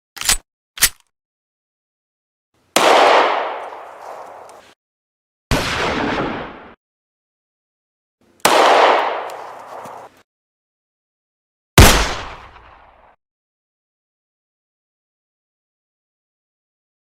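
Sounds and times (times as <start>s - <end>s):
gunshots: 2.8s - 4.5s, 5.5s - 6.8s, 8.4s - 10.1s, 11.8s - 12.9s.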